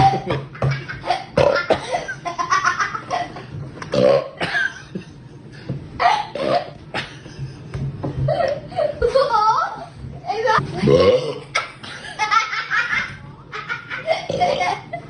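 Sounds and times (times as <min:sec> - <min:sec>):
man burping loudly: 0:01.4 - 0:01.8, 0:03.9 - 0:04.5, 0:10.8 - 0:11.5, 0:14.3 - 0:14.7.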